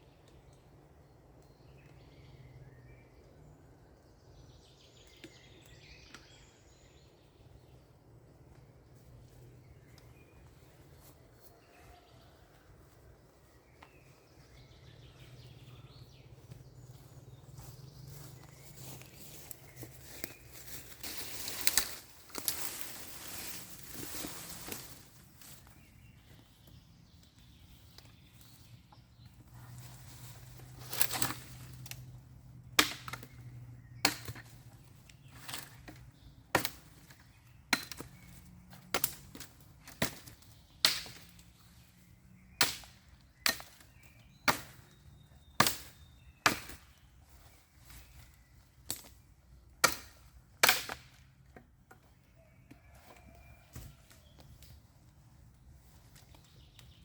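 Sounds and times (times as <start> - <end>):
axe chopping wood: 32.8 - 33.4, 34.0 - 34.6, 37.7 - 41.3, 42.6 - 44.9, 45.6 - 46.9, 49.8 - 51.2.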